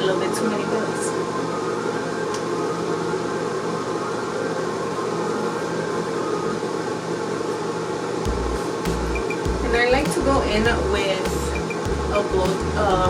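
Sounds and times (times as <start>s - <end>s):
machine hum with hiss: 7.5s - 10.3s.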